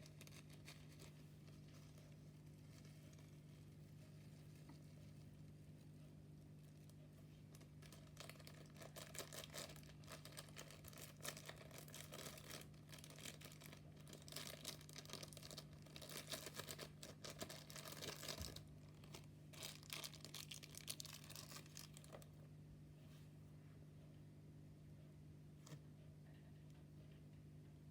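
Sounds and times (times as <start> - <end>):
faint low hum: 0.0 - 27.9.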